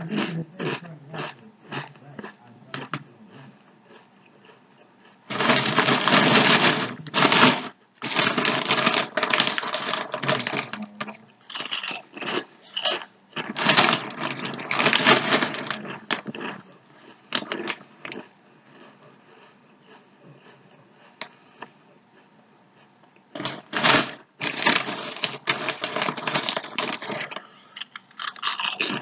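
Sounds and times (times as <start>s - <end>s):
crinkly chip bag crackling: 5.3s - 18.9s, 23.3s - 29.0s.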